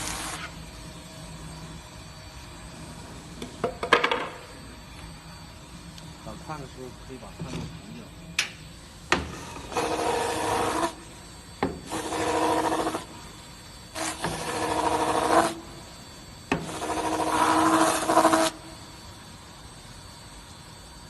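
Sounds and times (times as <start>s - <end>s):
sander grinding workpiece: 9.4s - 11.0s, 11.8s - 13.1s, 14.0s - 15.6s, 16.6s - 18.6s.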